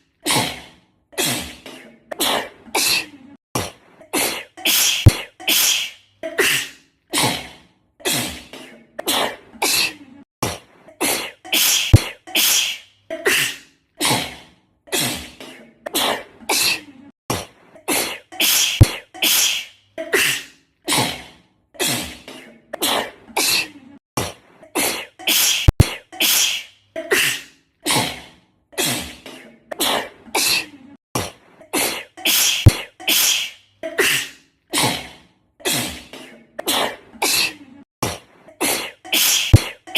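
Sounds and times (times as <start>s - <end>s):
girl sneezing: 4.1s - 7.4s, 11.0s - 14.2s, 17.9s - 21.1s, 24.8s - 28.1s, 31.7s - 35.0s, 38.6s - 39.9s.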